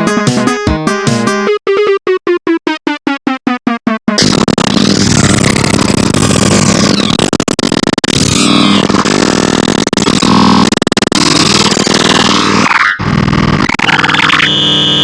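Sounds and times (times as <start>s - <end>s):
dense electronic ringtone music: 0.0s - 4.5s.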